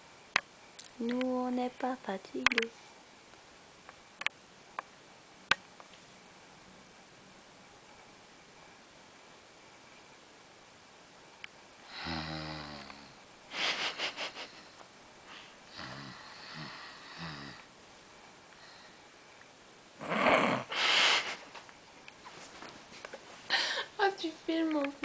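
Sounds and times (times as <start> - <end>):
person snoring: 11.9 - 13.2, 15.7 - 17.7, 20.0 - 21.0
sharp burst of breath: 20.7 - 21.4.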